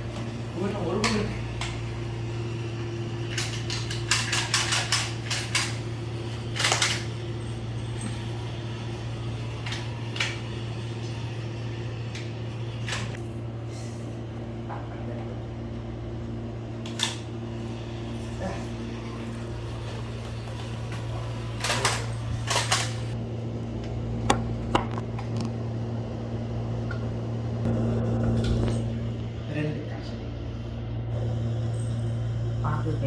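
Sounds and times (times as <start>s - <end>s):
low mechanical hum: 0.0s - 33.0s.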